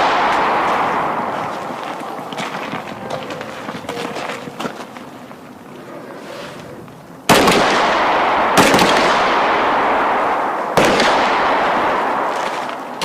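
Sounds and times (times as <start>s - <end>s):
gunshots with rolling echo: 0.0s - 3.0s, 7.3s - 13.0s.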